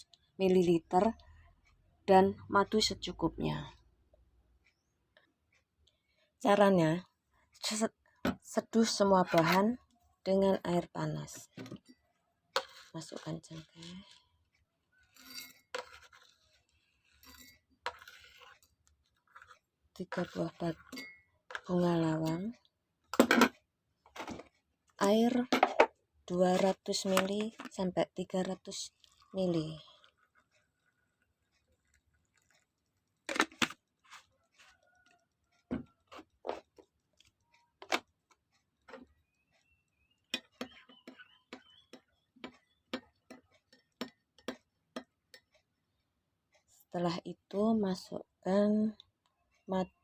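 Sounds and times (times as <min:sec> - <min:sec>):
kitchenware clicks and knocks: 0:25.5 - 0:26.0.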